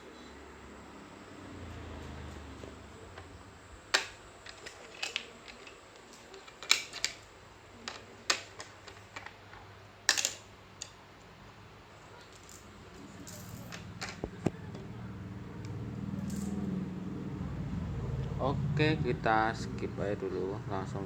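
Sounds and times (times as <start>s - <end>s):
small tools clicking and tapping: 3.9s - 11.3s.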